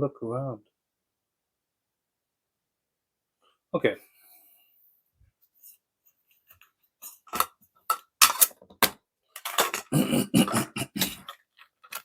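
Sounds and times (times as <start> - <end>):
small metal objects clinking: 9.4 - 9.9.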